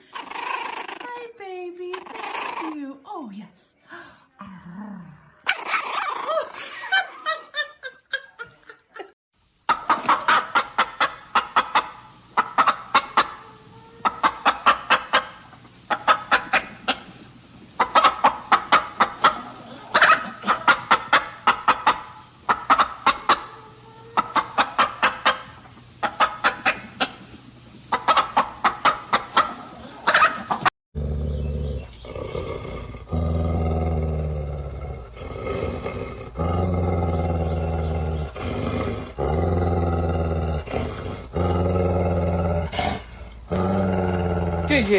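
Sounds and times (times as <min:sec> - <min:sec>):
chickens clucking: 0:09.7 - 0:30.7, 0:42.8 - 0:43.7.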